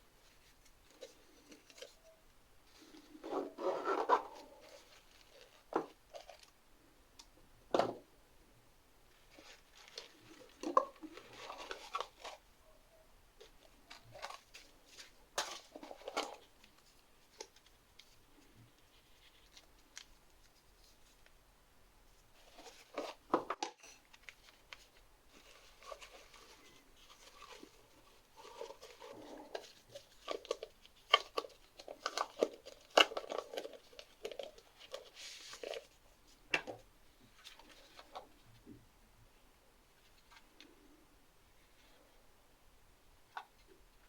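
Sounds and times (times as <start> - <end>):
objects rustling and scraping: 0.0 - 6.5, 9.1 - 12.5, 13.4 - 21.3, 22.1 - 38.8.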